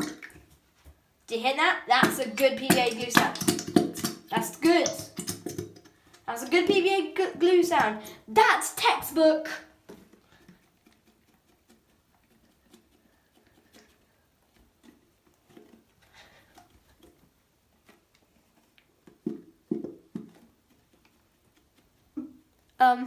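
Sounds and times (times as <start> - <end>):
glue bottle squelching: 0.0 - 23.0.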